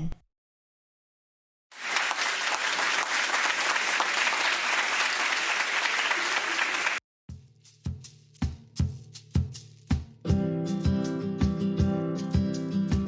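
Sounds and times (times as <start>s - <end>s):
crowd clapping: 1.7s - 7.0s
music with drum beat: 7.3s - 13.0s.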